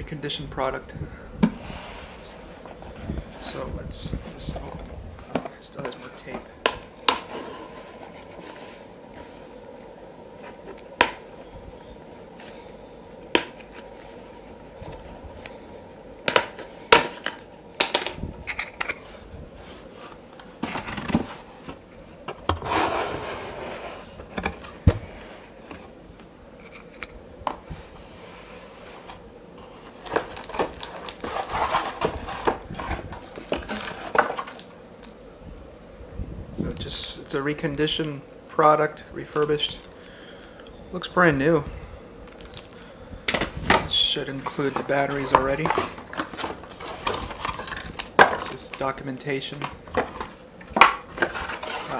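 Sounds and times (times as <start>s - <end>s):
cardboard rustling and scraping: 1.4s - 26.0s, 26.6s - 35.0s, 43.2s - 51.9s
packing tape pulled off: 29.9s - 35.1s.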